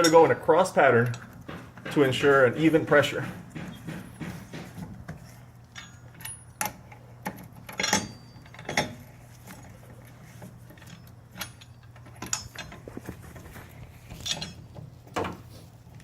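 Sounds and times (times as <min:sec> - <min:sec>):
tire iron turning lug nuts: 0:00.0 - 0:16.0.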